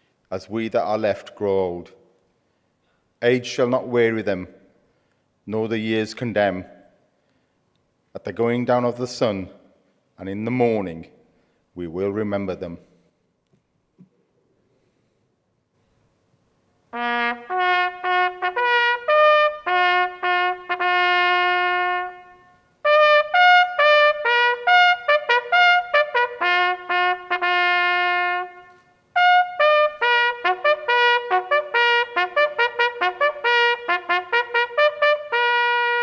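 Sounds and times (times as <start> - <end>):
bugle call: 17.0 - 36.0.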